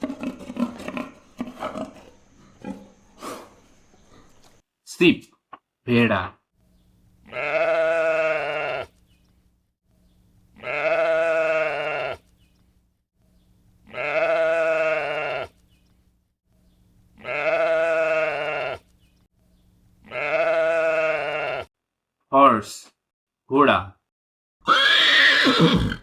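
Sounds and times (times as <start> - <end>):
sheep bleating: 7.2 - 9.0, 10.6 - 12.3, 13.9 - 15.6, 17.2 - 18.9, 20.0 - 21.7.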